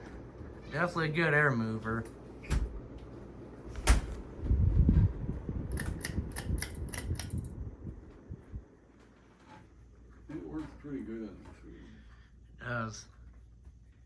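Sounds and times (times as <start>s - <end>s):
ceiling fan running: 0.0s - 14.0s
air buffeting microphone: 3.7s - 8.8s.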